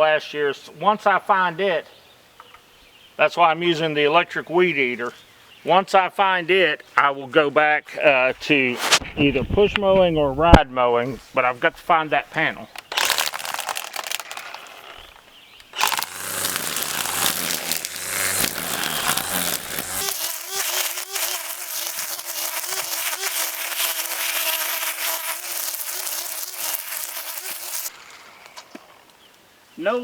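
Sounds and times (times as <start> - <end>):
string trimmer cutting weeds: 12.8 - 29.0
motor whine: 15.8 - 27.9.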